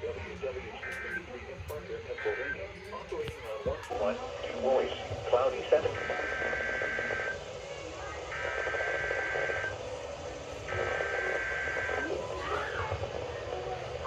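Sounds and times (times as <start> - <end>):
screeching two-tone digital data: 5.9 - 7.4, 8.3 - 9.7, 10.6 - 12.7.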